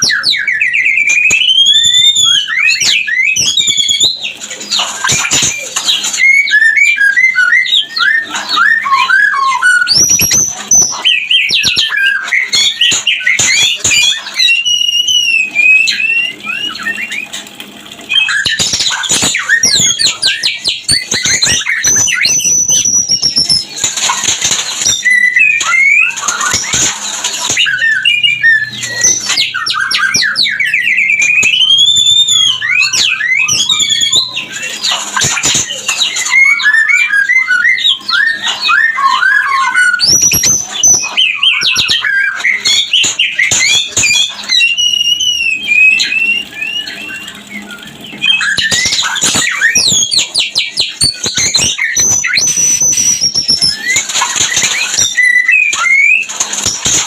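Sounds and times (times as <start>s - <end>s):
birds singing whistles and trills: 0.0s - 57.0s
harsh bird squawking: 18.0s - 57.0s.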